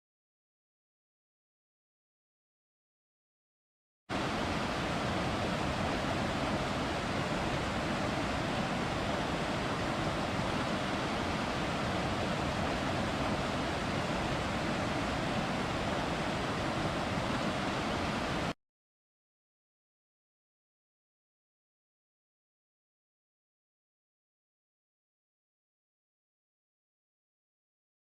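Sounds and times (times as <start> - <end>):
waterfall rushing: 4.1 - 18.6.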